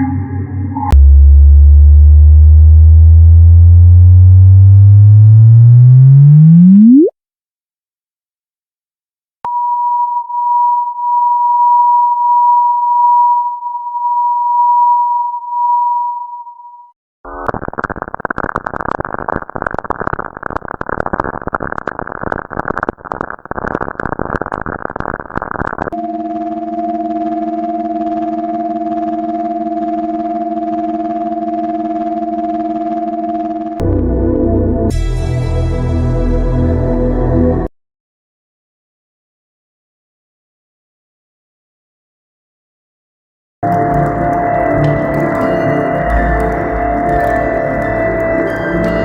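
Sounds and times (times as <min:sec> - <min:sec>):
low hum rising in pitch: 0:00.0 - 0:07.1, 0:26.3 - 0:35.1
crackling radio static: 0:17.3 - 0:26.0
sharp clicks: 0:17.4 - 0:26.0.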